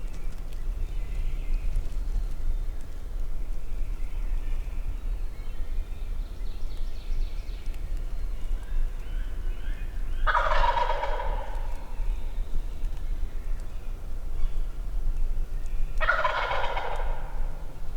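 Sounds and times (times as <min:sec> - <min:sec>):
turkey gobbling: 0:10.3 - 0:11.8, 0:16.0 - 0:17.6.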